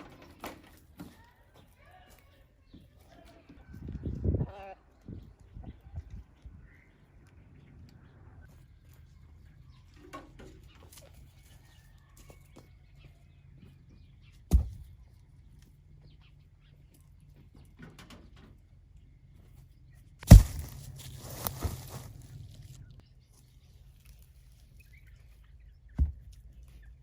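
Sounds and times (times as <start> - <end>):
sharp knock: 20.2 - 22.1
rustling: 20.2 - 25.5.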